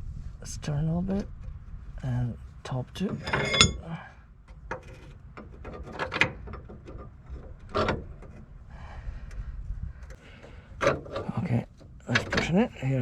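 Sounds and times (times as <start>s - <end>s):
low steady rumble: 0.0s - 13.0s
metal clinks and knocks: 3.1s - 3.9s.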